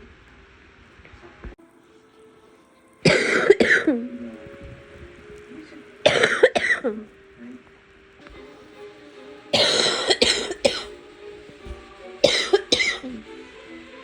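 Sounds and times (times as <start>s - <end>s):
person coughing: 3.1s - 4.1s, 6.1s - 7.0s, 9.6s - 10.9s, 12.2s - 13.2s.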